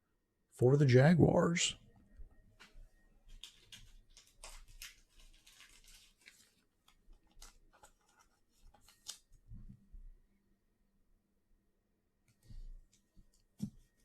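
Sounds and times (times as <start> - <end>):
trading cards rustling and clicking: 2.6 - 9.4.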